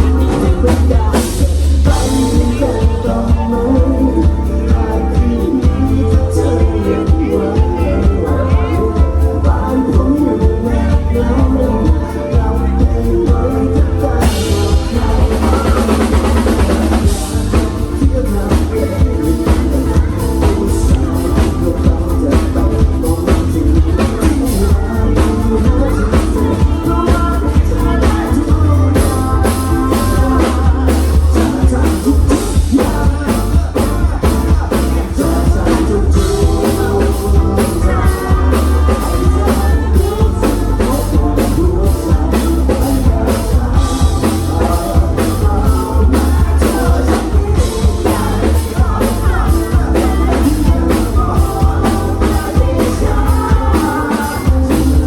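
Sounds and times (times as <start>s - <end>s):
drum kit beat: 0.0s - 55.0s
heavy bass line: 0.0s - 55.0s
person singing: 0.0s - 55.0s.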